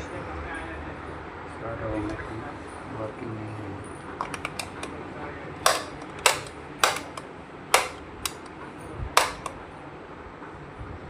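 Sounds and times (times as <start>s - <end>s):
loud knocks of tools: 5.6s - 8.5s, 9.2s - 9.6s.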